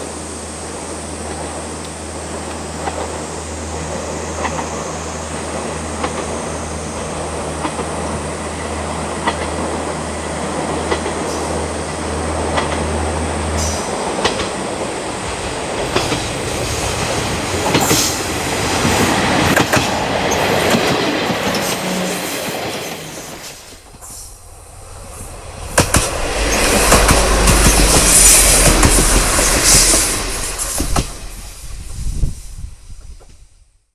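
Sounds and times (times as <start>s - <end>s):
diesel railcar engine rumble: 0.0s - 33.6s
train wheels clacking over rail joints: 1.8s - 4.8s, 5.4s - 24.0s, 25.7s - 31.4s.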